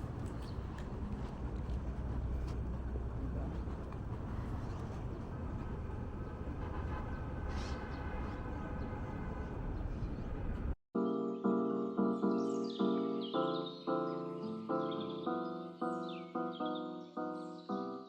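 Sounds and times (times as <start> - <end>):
traffic rumble: 0.0 - 10.8
music with evenly spaced notes: 11.0 - 18.0.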